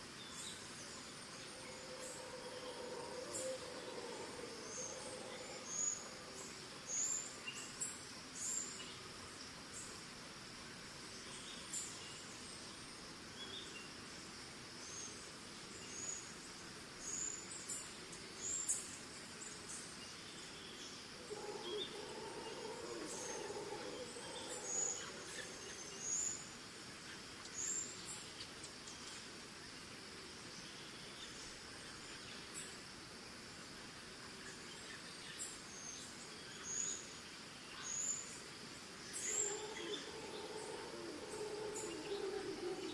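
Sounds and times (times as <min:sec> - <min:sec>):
crickets droning: 0:00.0 - 0:42.9
distant monkeys calling: 0:01.5 - 0:06.6, 0:21.2 - 0:26.2, 0:39.2 - 0:42.9.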